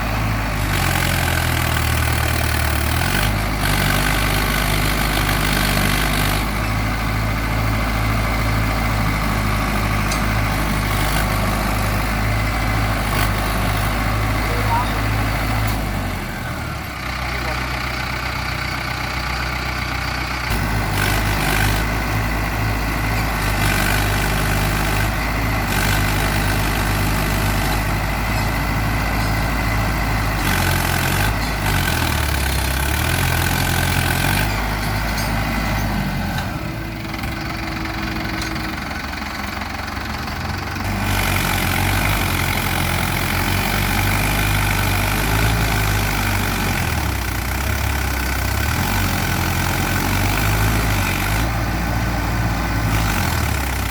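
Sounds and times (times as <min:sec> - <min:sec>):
diesel machinery engine running: 0:00.0 - 0:53.9.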